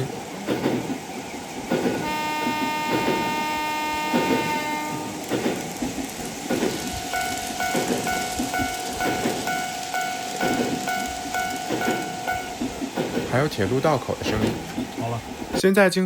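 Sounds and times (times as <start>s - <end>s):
rail-joint clatter: 0.0s - 15.9s
level-crossing bell dinging: 6.6s - 12.9s
held tone: 6.7s - 12.9s.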